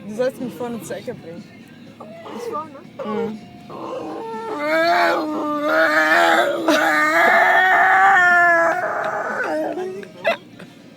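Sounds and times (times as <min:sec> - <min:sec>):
dog whining: 0:02.0 - 0:10.4.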